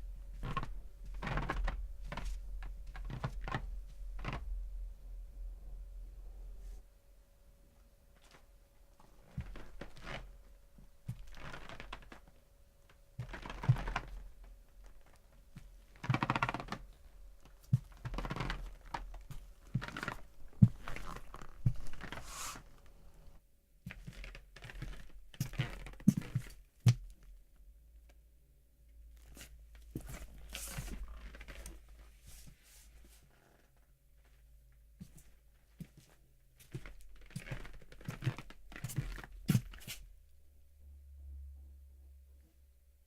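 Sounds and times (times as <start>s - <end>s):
footsteps on creaking floor: 9.3s - 10.3s, 11.1s - 12.1s, 13.2s - 14.2s, 17.8s - 22.7s, 35.0s - 40.0s.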